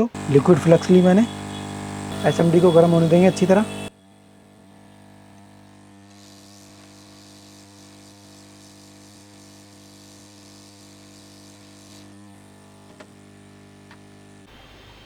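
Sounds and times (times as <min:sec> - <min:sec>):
low electrical hum: 0:00.0 - 0:07.6.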